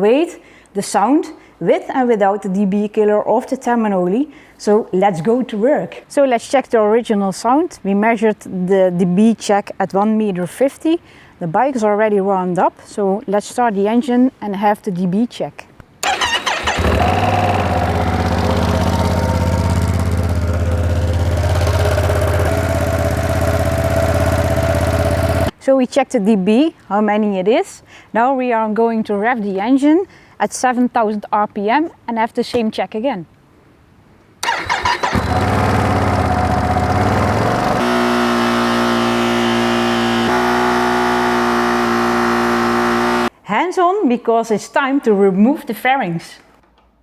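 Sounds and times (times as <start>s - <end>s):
motorcycle engine starting and idling: 16.0s - 25.6s, 34.4s - 43.3s.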